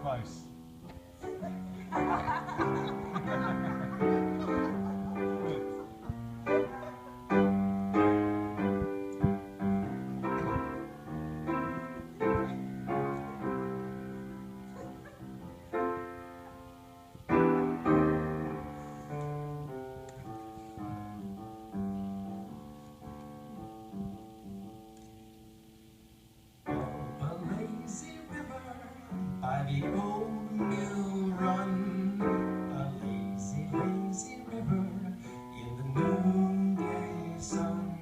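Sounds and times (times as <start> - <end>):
solo piano playing slow chords: 0.0 - 38.0.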